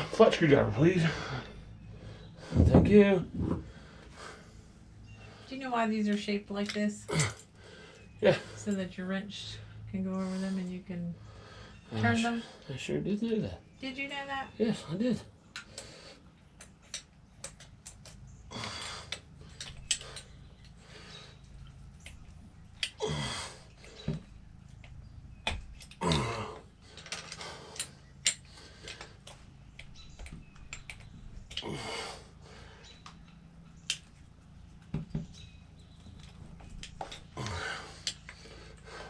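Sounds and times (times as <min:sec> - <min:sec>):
metal tools clinking: 0:26.9 - 0:29.0.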